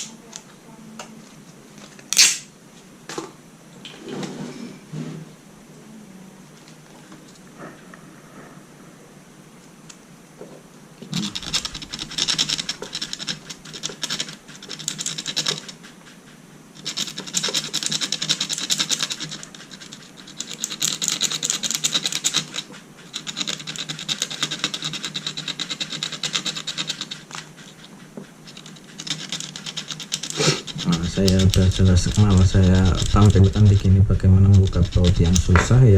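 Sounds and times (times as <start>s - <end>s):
screwdriver scraping on sandpaper: 11.1s - 35.8s.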